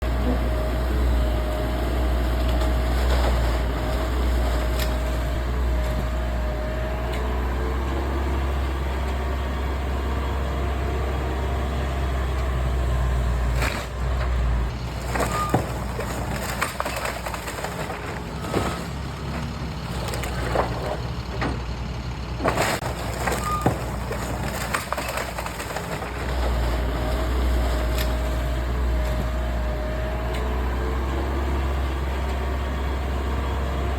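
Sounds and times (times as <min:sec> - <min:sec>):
engine whine: 0:00.0 - 0:33.9
excavator diesel engine droning: 0:00.0 - 0:33.9
house being demolished cracks and crashes: 0:02.1 - 0:06.0, 0:13.3 - 0:21.7, 0:22.3 - 0:29.4.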